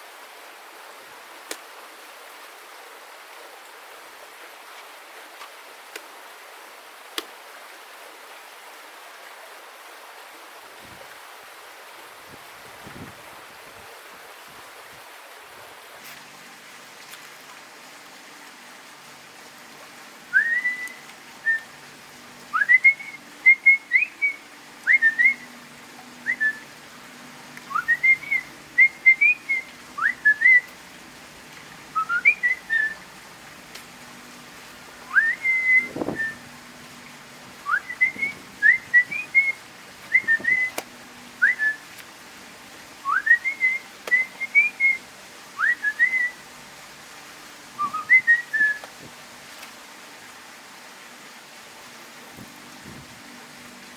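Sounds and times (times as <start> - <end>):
person whistling a tune: 20.3 - 21.7, 22.5 - 25.4, 26.2 - 26.7, 27.7 - 30.7, 32.0 - 33.0, 35.1 - 36.4, 37.6 - 40.8, 41.4 - 41.8, 43.0 - 45.0, 45.6 - 46.4, 47.8 - 48.8.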